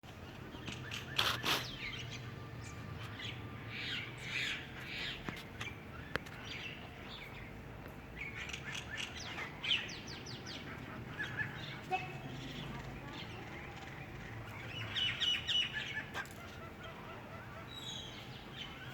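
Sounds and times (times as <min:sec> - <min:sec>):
small birds chirping: 0:00.0 - 0:18.9.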